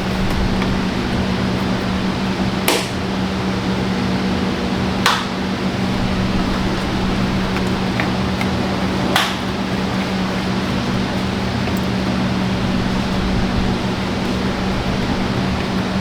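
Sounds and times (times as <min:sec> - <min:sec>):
steady mechanical hum: 0:00.0 - 0:16.0.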